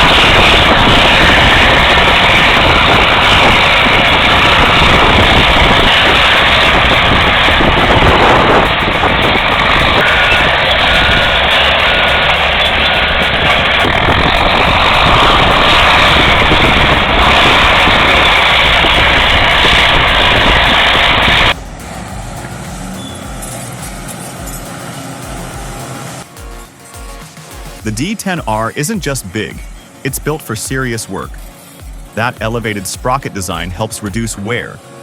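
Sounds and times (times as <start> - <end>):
bulldozer diesel engine running: 0.0 - 34.8
backup alarm beeping: 1.9 - 34.4.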